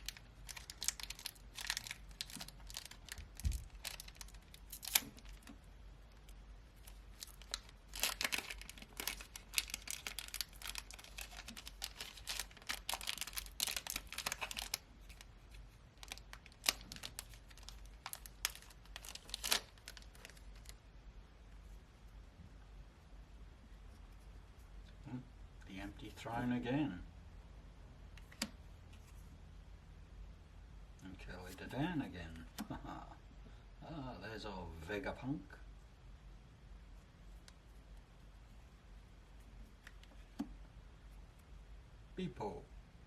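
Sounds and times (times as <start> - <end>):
wrapper tearing and crinkling: 0.0 - 5.6, 6.8 - 20.8
cards clicking and rustling: 0.0 - 20.7.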